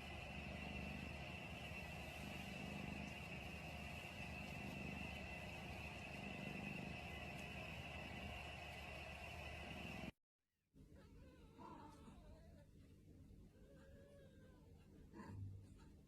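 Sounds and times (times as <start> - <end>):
faint background hum and hiss: 0.0 - 10.1, 10.8 - 16.0
thin high whine: 0.0 - 10.1.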